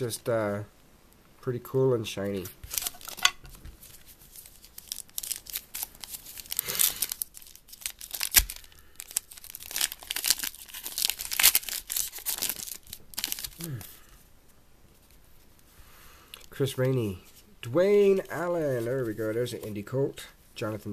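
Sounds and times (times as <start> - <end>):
wrapper tearing and crinkling: 2.4 - 14.0.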